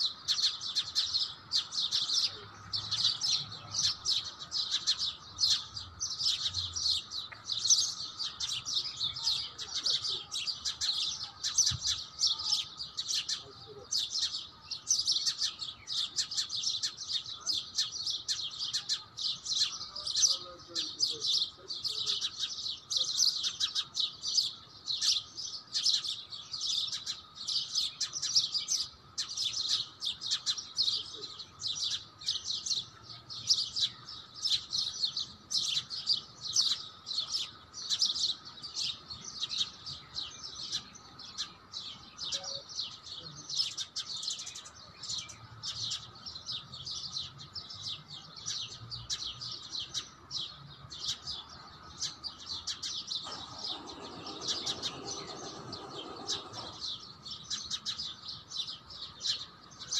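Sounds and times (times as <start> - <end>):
small birds chirping: 0.0 - 59.9.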